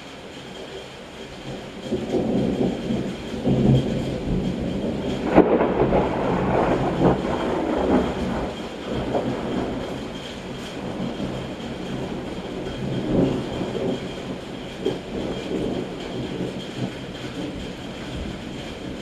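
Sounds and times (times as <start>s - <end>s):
thunder rolling: 0.0s - 19.0s
sharp thunder crack: 3.4s - 14.4s.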